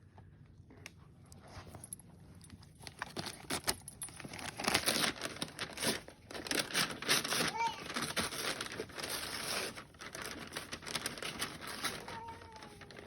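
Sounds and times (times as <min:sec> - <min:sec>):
wrapping paper crinkling and tearing: 0:02.8 - 0:13.0.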